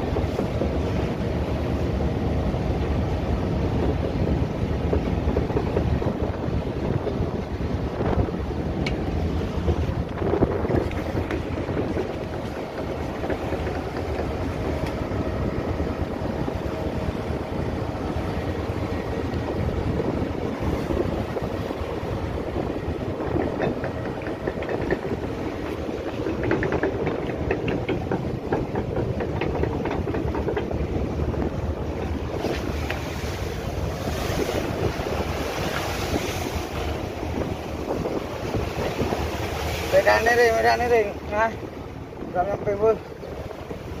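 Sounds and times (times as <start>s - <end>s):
boat engine running: 0.0s - 44.0s
sea noise in rough water: 0.0s - 44.0s
wind buffeting microphone: 0.0s - 44.0s.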